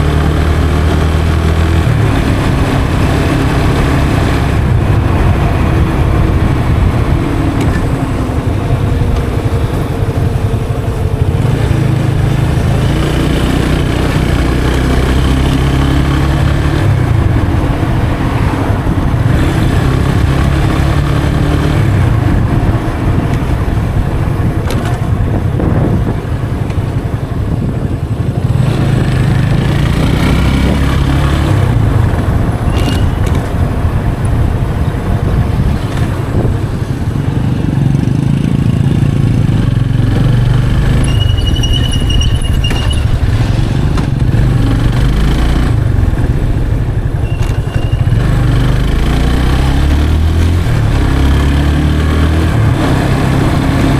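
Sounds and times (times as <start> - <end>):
motorcycle engine while riding: 0.0 - 53.9.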